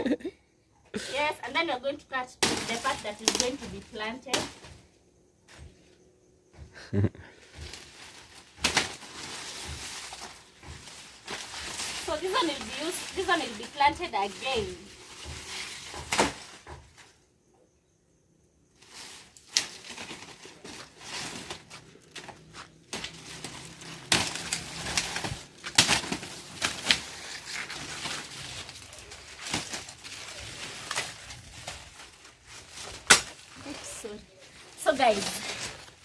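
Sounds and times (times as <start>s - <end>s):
cane crackling and rustling: 1.4s - 4.8s, 7.4s - 17.2s, 18.8s - 36.0s
machete chopping sugarcane: 2.4s - 3.6s, 8.6s - 13.2s, 15.2s - 16.8s, 22.9s - 28.2s, 32.9s - 33.4s.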